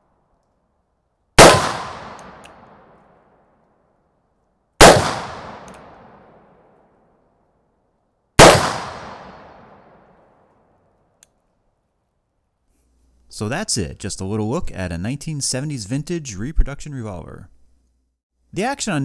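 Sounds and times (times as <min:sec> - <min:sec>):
revolver gunshots: 0:01.4 - 0:03.0, 0:04.8 - 0:06.5, 0:08.4 - 0:10.1
hammer cocking clicks: 0:02.0 - 0:02.7, 0:05.4 - 0:05.9.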